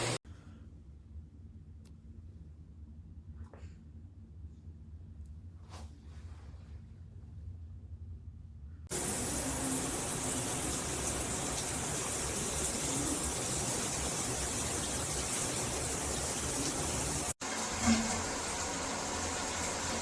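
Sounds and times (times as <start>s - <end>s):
shower head spraying water: 0.0s - 0.2s, 8.9s - 20.0s.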